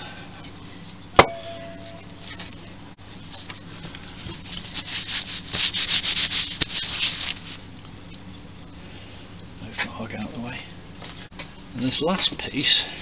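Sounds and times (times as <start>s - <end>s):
rubbing and scraping on metal: 4.5s - 7.5s.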